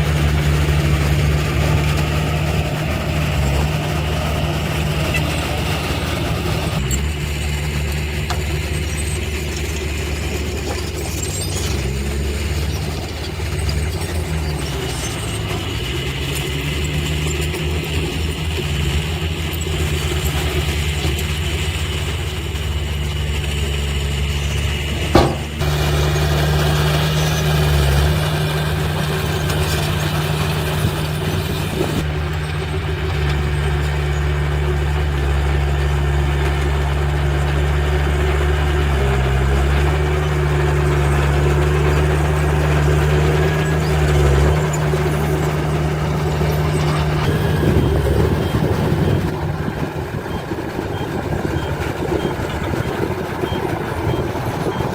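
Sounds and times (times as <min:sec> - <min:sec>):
heavy diesel engine running: 0:00.0 - 0:54.9
sharp metal clank: 0:25.0 - 0:25.6.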